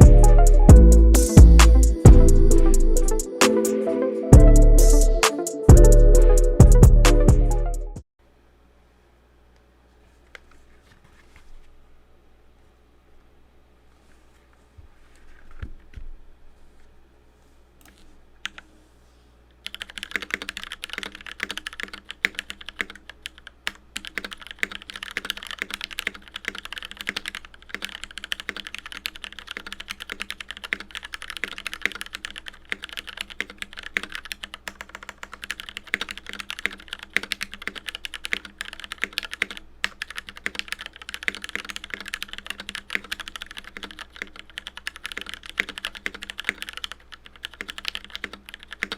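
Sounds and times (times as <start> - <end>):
typing on mechanical keyboard: 19.6 - 48.9.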